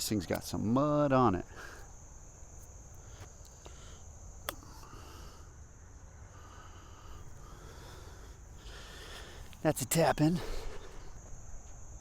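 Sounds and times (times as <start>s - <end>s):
insects droning: 0.0s - 12.0s
golf club striking ball: 4.4s - 4.7s.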